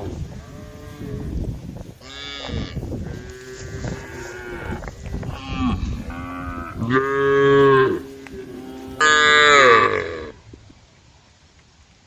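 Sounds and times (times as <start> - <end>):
cattle mooing: 2.0 - 10.4.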